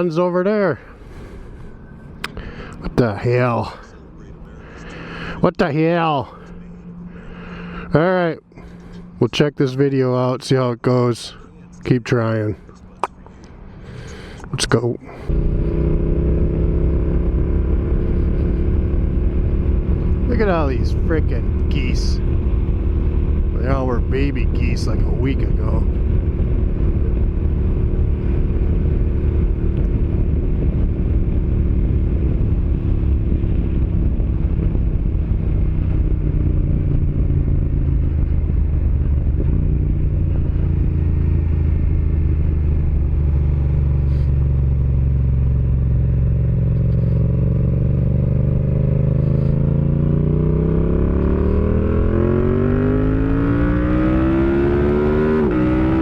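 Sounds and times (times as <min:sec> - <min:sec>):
motorcycle engine running: 0:15.1 - 0:56.0.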